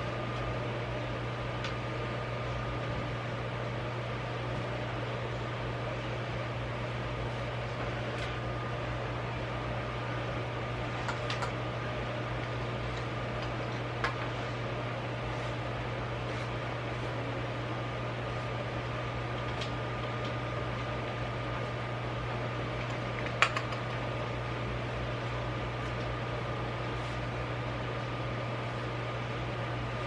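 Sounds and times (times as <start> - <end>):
mechanical hum: 0.0 - 30.0.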